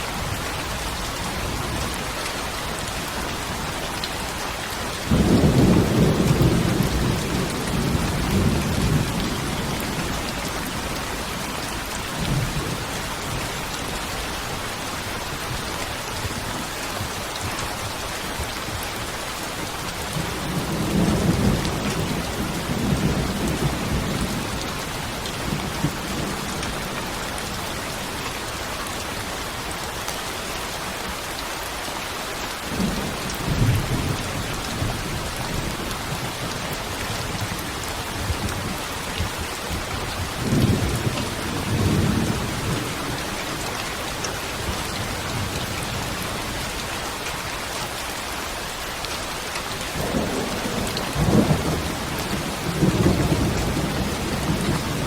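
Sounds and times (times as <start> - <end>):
steady rain: 0.0 - 55.0
thunder rumbling: 5.0 - 12.9, 49.9 - 55.0.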